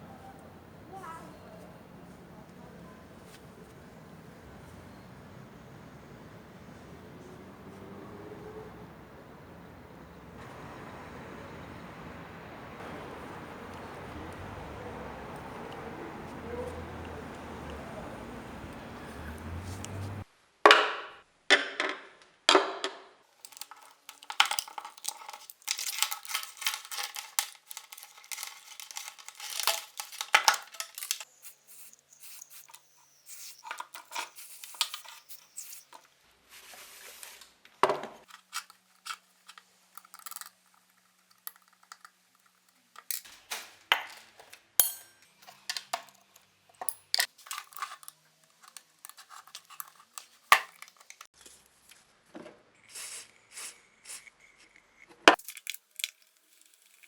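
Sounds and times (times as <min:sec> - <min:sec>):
metal tools clinking and scraping: 0:23.4 - 0:36.0, 0:38.2 - 0:46.2, 0:46.8 - 0:51.3.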